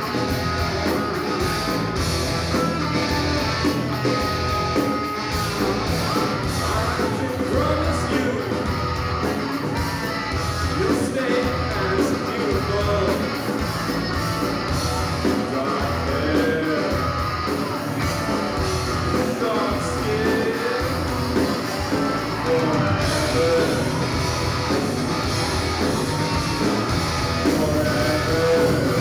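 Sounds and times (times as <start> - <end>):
rock band playing live: 0.0 - 29.0
person singing: 15.2 - 17.2, 19.1 - 21.4, 22.0 - 24.3, 27.2 - 29.0.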